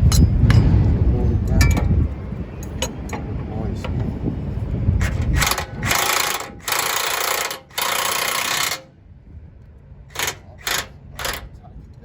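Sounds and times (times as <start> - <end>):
impact wrench running: 5.0 - 8.9, 10.1 - 11.5.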